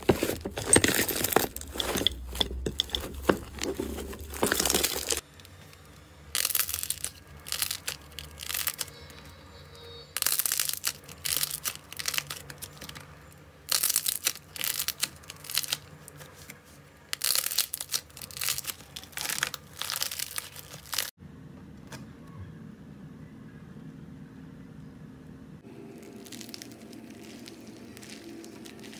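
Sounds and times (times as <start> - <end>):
slime crackling and popping: 6.3 - 9.0, 10.2 - 13.0, 13.7 - 15.9, 17.1 - 21.1, 25.9 - 28.9.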